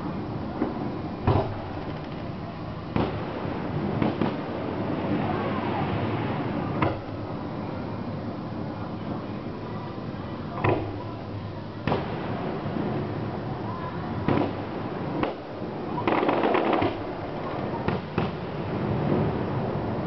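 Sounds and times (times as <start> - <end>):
fireworks crackling: 0.0 - 9.7, 10.7 - 20.0
fireworks banging: 0.6 - 7.6, 10.5 - 13.6, 14.2 - 19.7.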